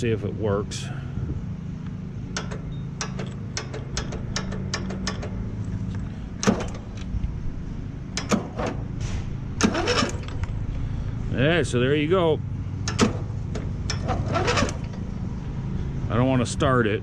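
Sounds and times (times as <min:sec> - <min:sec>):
electric starter turning engine over: 0:09.6 - 0:10.5, 0:13.9 - 0:15.0.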